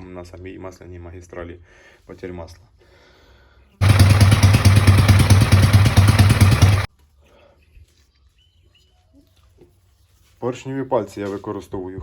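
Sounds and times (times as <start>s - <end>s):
motorcycle engine running: 3.8s - 6.9s.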